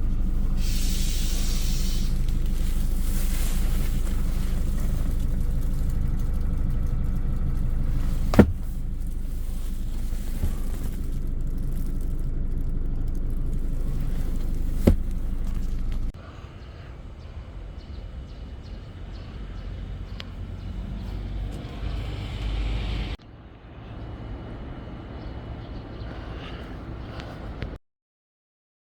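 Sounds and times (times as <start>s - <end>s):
vehicle engine rumbling: 0.0s - 27.8s.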